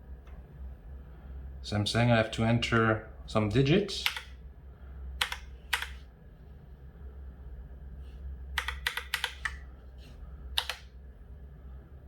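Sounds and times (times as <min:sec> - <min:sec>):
mechanical keyboard keys clacking: 0:08.6 - 0:09.6.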